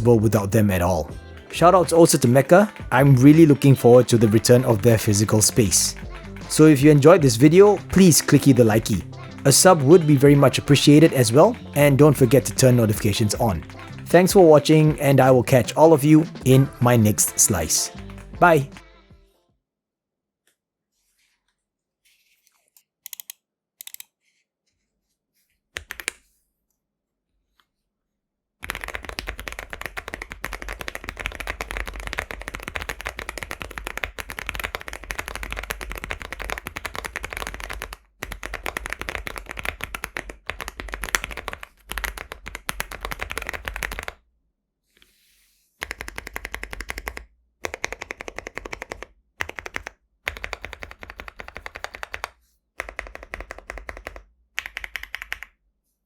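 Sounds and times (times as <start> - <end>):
mechanical keyboard typing: 23.1 - 24.0, 28.6 - 44.2, 45.8 - 55.5.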